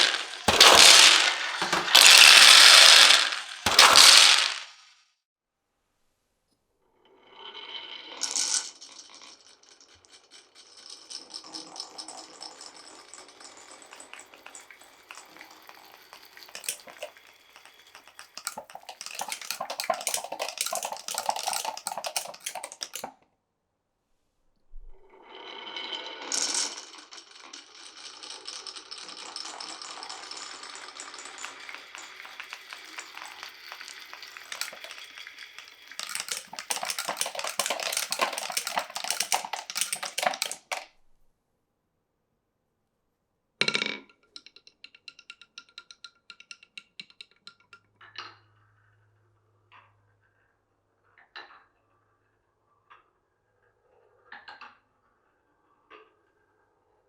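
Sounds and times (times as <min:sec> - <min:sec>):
marbles rolling on wooden run: 0:00.0 - 0:04.8, 0:08.2 - 0:23.1, 0:26.3 - 0:40.9.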